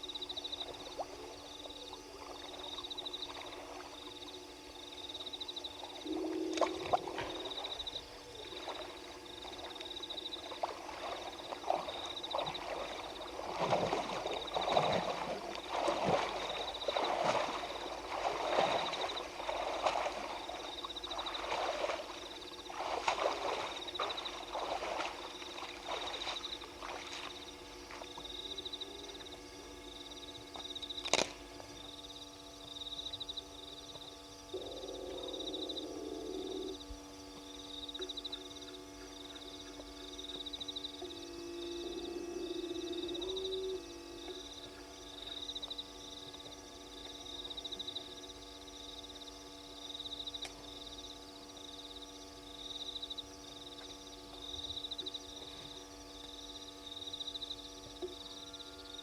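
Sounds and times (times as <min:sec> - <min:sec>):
frogs croaking: 0:00.0 - 0:59.0
high pulsing trill: 0:06.0 - 0:07.7.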